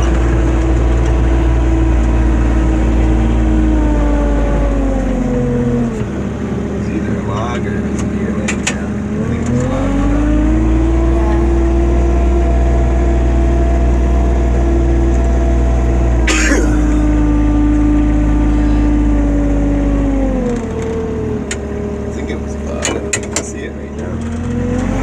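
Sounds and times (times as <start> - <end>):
atv engine running: 0.0 - 25.0.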